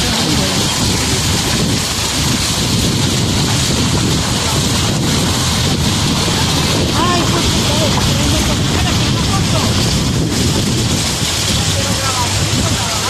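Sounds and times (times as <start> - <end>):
water rushing down spillway: 0.0 - 13.0.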